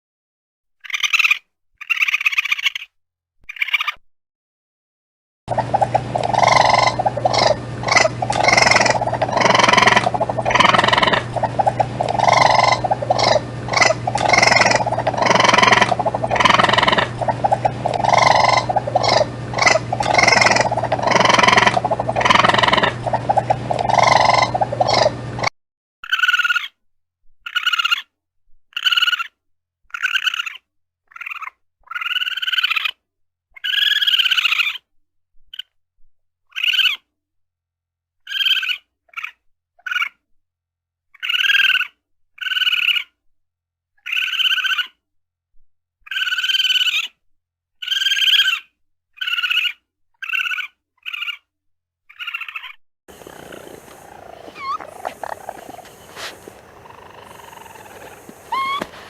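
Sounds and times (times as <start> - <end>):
background hum: 5.5 - 25.5, 53.1 - 59.0
raccoon cries: 6.3 - 25.1, 52.2 - 59.0.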